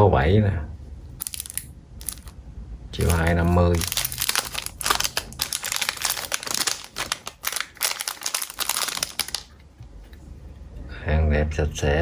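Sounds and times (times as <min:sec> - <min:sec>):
wrapping crinkling: 0:01.2 - 0:02.4, 0:03.0 - 0:09.6.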